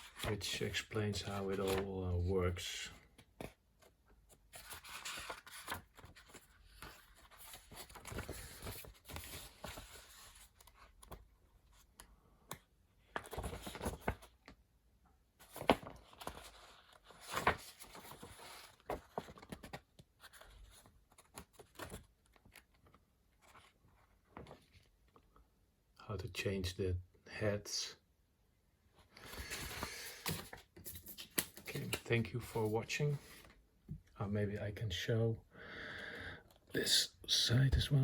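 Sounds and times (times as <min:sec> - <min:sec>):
paper pages rustling: 0:00.0 - 0:02.1, 0:03.1 - 0:12.0, 0:13.1 - 0:14.6, 0:15.4 - 0:24.9, 0:29.1 - 0:33.6.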